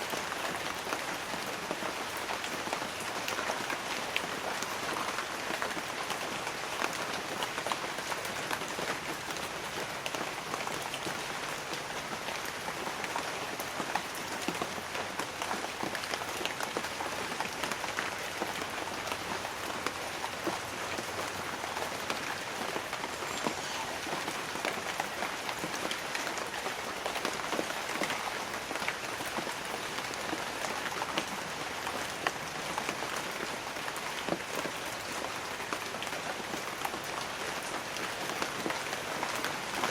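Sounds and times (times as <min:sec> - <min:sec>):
light rain on leaves: 0:00.0 - 0:39.9.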